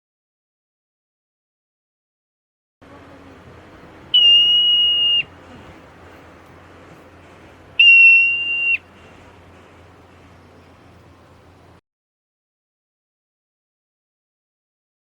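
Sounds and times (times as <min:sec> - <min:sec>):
marmot alarm whistle: 0:04.0 - 0:05.8, 0:07.8 - 0:09.2.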